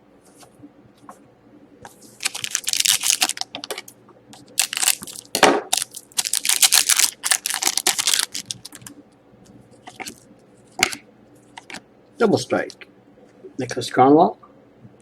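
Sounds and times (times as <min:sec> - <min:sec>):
foil wrapper crinkling: 0:02.2 - 0:08.9.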